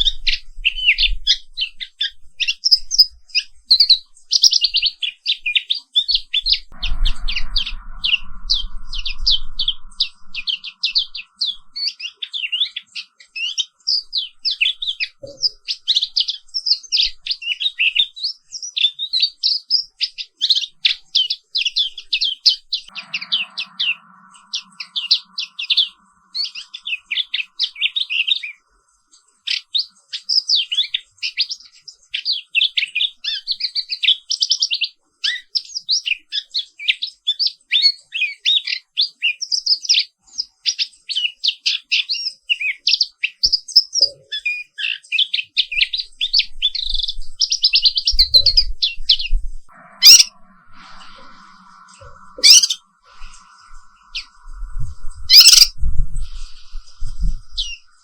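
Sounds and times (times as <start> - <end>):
bird singing high chirps and trills: 0.0 - 58.0
faint steady hum: 6.4 - 12.8, 21.8 - 29.6, 46.0 - 58.0.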